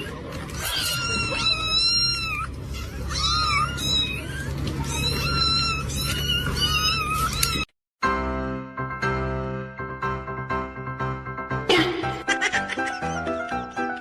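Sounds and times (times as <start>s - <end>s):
cat meowing: 0.0s - 7.7s.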